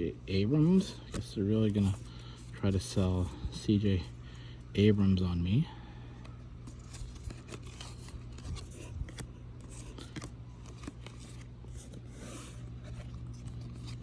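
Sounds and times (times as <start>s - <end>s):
steady low hum: 0.0s - 14.0s
trading cards clicking and sliding: 6.6s - 14.0s.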